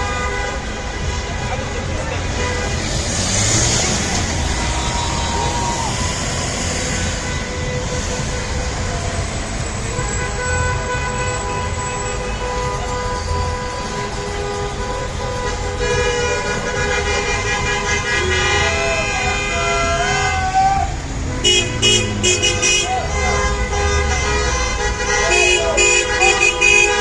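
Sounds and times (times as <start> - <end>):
street noise: 0.0 - 27.0
vehicle horns honking: 0.0 - 27.0.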